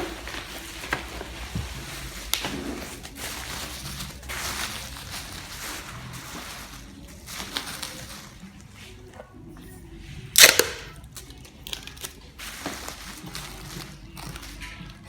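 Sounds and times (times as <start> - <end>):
loud sharp crack: 10.4 - 10.9.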